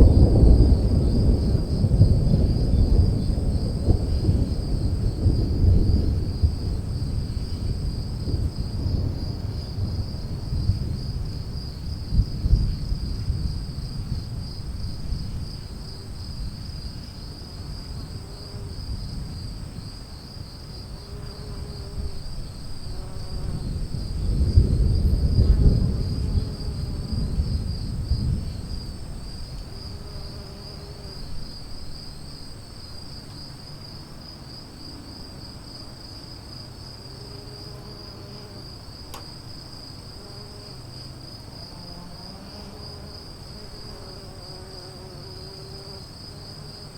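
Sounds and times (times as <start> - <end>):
rolling thunder: 0.0 - 30.5
insects chirring: 0.0 - 46.9.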